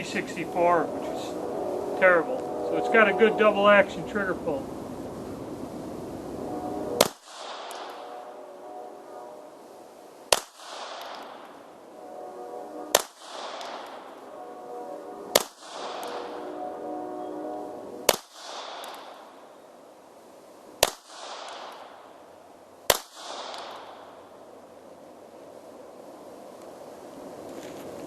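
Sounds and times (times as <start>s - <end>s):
pistol shots with echo: 10.3s - 11.4s.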